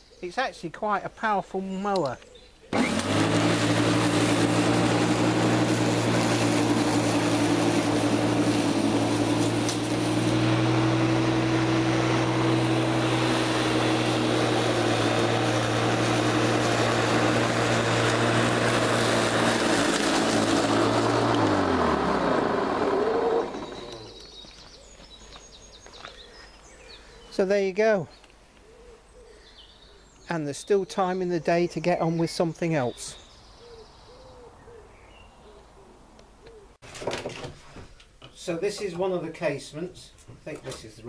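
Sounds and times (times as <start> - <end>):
electric lawn mower running: 2.7 - 24.3
motor and blade winding down: 2.7 - 24.3.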